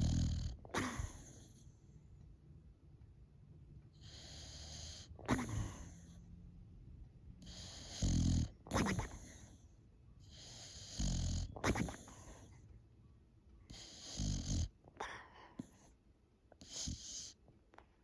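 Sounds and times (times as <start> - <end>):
dog snoring: 0.0 - 1.6, 4.0 - 6.2, 7.4 - 9.6, 10.2 - 12.5, 13.7 - 14.8, 16.6 - 17.4.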